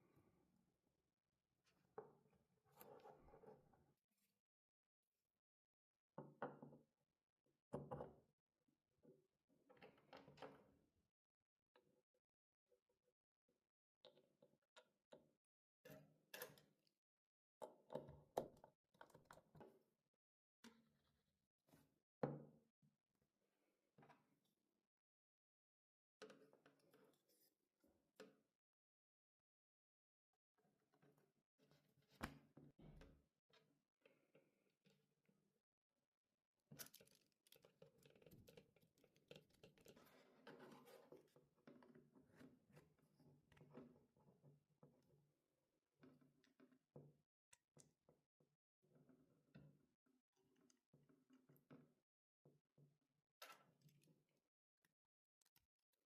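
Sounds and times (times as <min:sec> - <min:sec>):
faint clicking and scratching: 0:36.7 - 0:45.1.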